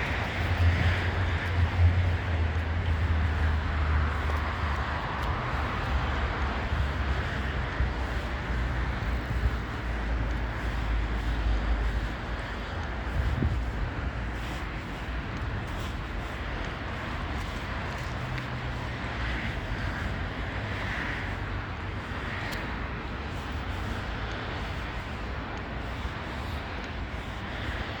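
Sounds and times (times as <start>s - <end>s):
traffic noise: 0.0s - 28.0s.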